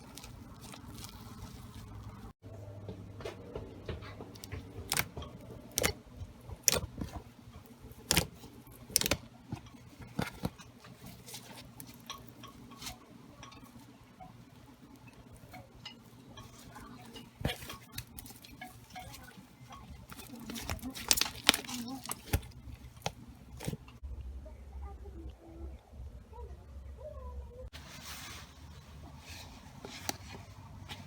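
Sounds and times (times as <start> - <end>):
slime squished by hand: 4.4 - 7.3, 7.9 - 9.2, 20.1 - 23.8.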